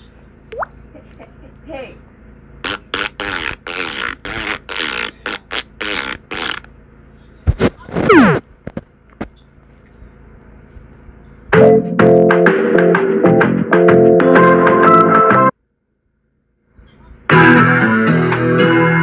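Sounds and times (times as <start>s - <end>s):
fart-like noises: 2.6s - 6.7s, 7.5s - 8.4s.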